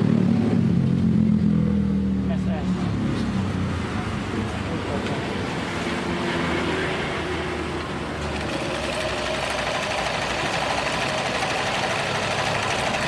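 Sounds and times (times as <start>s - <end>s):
sewing machine stitching: 8.1s - 13.0s.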